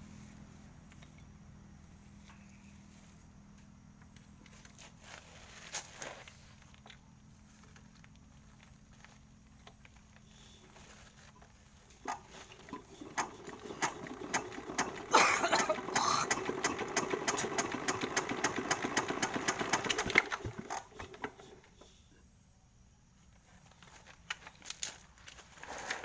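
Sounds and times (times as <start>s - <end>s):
diesel engine running: 6.4s - 21.9s
diesel engine cranking: 7.5s - 22.0s.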